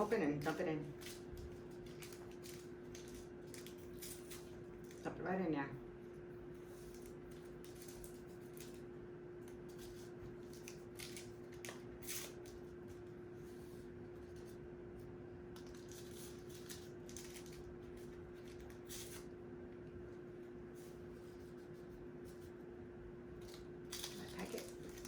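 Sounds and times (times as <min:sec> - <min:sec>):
steady low hum: 0:00.0 - 0:25.0
paper packets crinkling and tearing: 0:00.1 - 0:05.1, 0:06.6 - 0:12.8, 0:15.5 - 0:19.3, 0:23.4 - 0:25.0.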